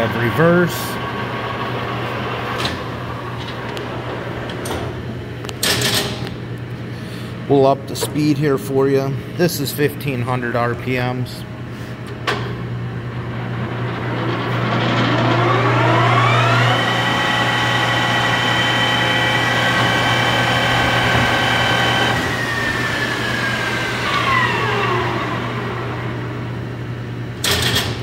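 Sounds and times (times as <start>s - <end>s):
motor hum: 10.6s - 28.0s
lathe gear whine: 13.2s - 26.6s.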